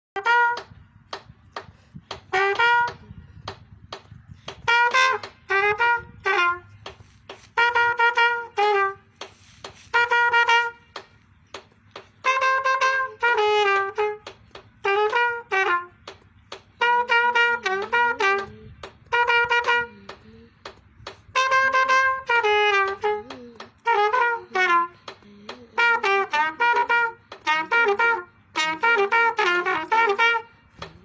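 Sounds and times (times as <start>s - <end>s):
trumpet melody: 0.2s - 0.8s, 2.2s - 3.2s, 4.6s - 11.2s, 12.2s - 16.0s, 16.8s - 20.0s, 21.3s - 25.1s, 25.8s - 30.9s.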